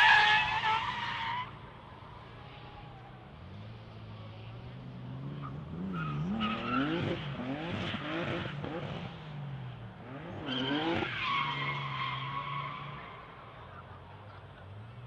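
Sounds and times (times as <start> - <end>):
race car engine revving: 3.4 - 13.1.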